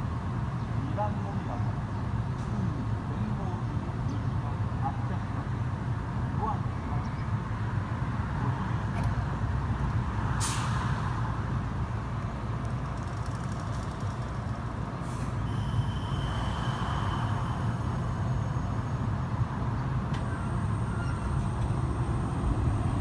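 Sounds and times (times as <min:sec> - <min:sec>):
train low rumble: 0:00.0 - 0:23.0
air hiss: 0:15.0 - 0:20.0
faint high tone: 0:15.4 - 0:21.5.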